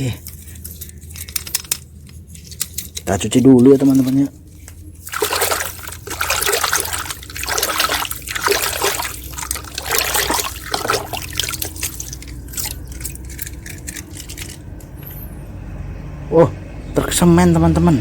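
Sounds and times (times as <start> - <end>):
water splashing over plastic toy: 3.6 - 14.7.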